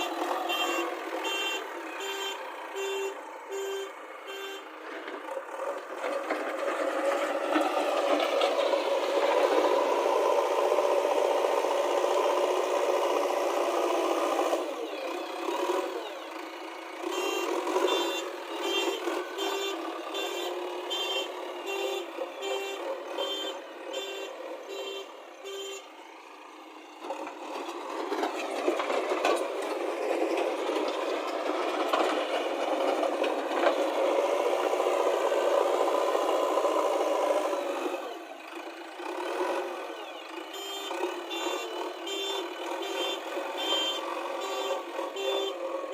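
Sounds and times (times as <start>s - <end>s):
reversing alarm beeping: 0.0s - 4.6s
backhoe loader engine running: 0.0s - 45.9s.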